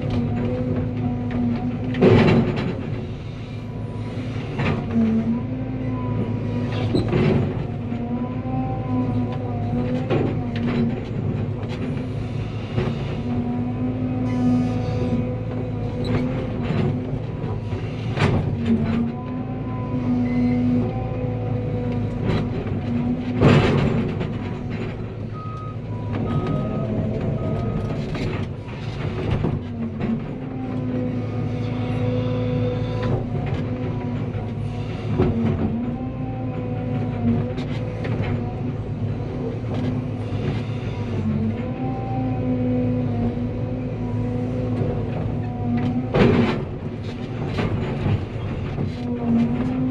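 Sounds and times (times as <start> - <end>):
excavator diesel engine under load: 0.0 - 49.9
short beeps: 25.4 - 27.8.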